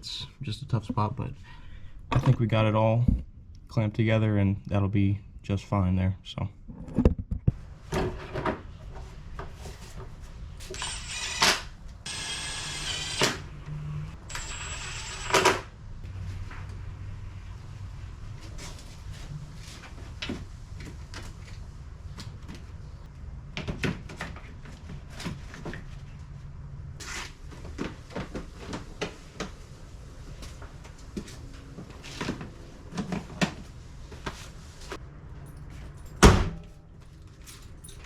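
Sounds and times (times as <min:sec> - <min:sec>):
tools and parts clanking: 0:35.4 - 0:38.0.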